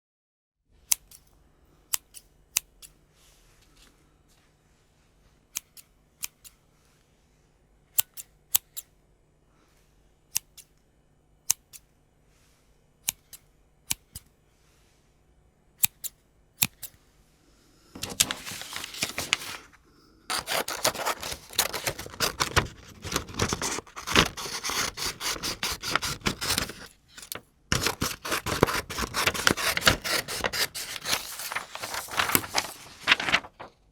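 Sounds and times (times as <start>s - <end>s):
scissors snipping: 20.3s - 31.5s.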